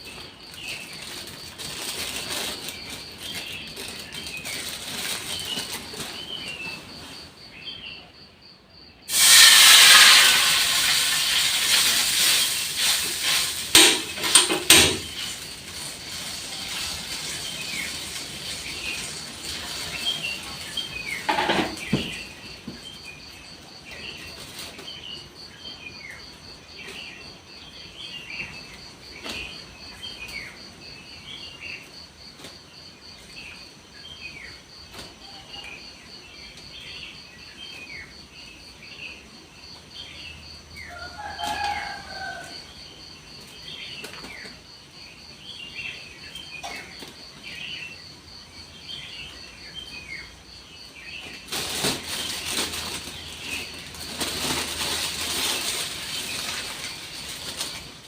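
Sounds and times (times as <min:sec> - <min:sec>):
pulsing insect trill: 0:09.1 - 0:24.3.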